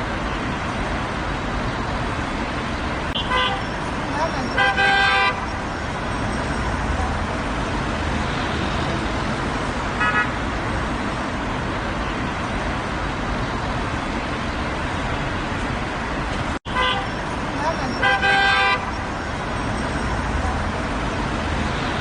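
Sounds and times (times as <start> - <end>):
road traffic: 0.0 - 22.0
car horn toot: 3.2 - 3.7, 4.4 - 5.5, 10.0 - 10.4, 16.7 - 17.2, 17.9 - 19.0.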